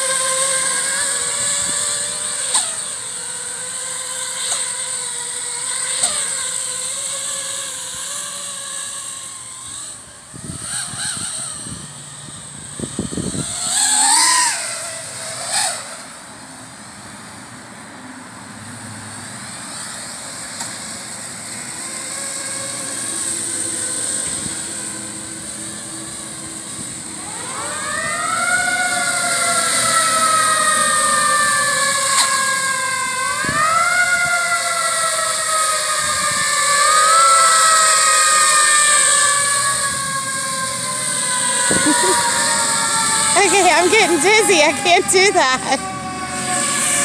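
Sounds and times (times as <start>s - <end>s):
quadcopter motors whining: 0.0s - 47.0s
siren winding up: 7.9s - 15.9s, 21.4s - 47.0s.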